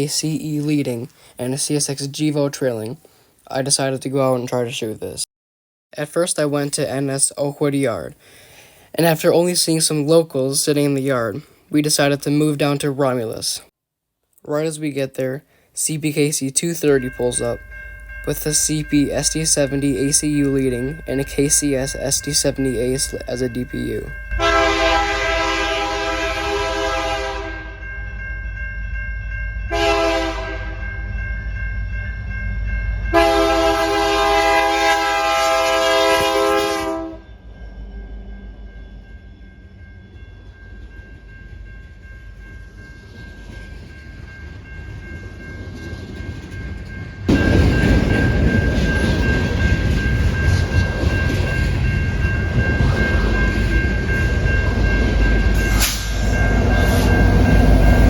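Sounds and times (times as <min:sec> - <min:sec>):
train passing close: 0:14.6 - 0:58.0
locomotive air horn blasts: 0:24.4 - 0:27.8, 0:29.7 - 0:30.8, 0:33.1 - 0:37.3.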